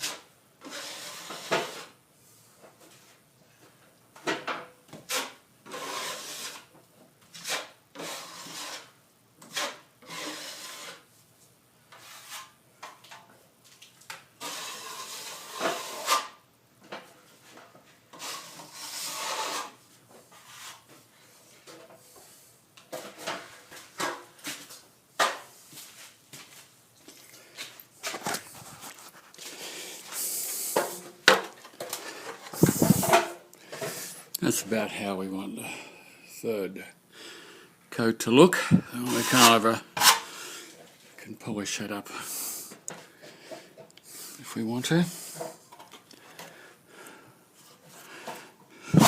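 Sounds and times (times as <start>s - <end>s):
trowel scraping plaster: 0.0s - 2.0s, 4.9s - 6.7s, 7.3s - 11.1s, 11.9s - 12.6s, 14.4s - 16.4s, 18.1s - 21.0s, 31.8s - 33.3s, 38.9s - 40.4s.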